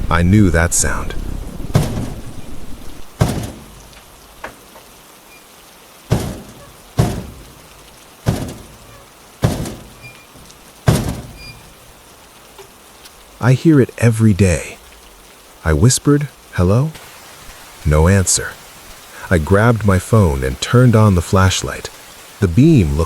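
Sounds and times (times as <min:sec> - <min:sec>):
steady rain: 0:00.0 - 0:23.0
heavy footstep thuds: 0:00.8 - 0:04.0, 0:06.1 - 0:07.6, 0:08.2 - 0:08.8, 0:09.4 - 0:10.0, 0:10.9 - 0:11.4.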